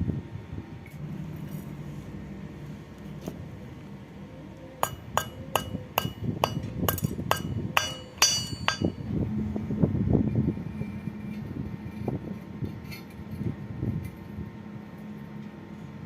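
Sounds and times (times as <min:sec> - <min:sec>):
dull metal clatter: 0:04.8 - 0:09.0
hammer striking ringing steel pipe: 0:04.8 - 0:09.0.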